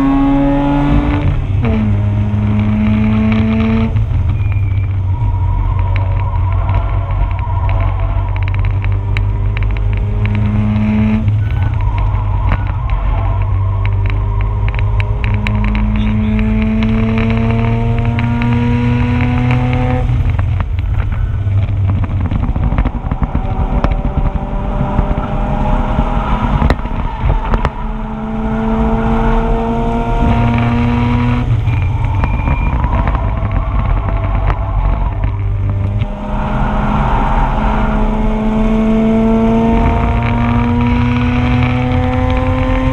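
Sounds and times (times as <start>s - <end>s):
rotary engine accelerating: 0.0s - 42.9s.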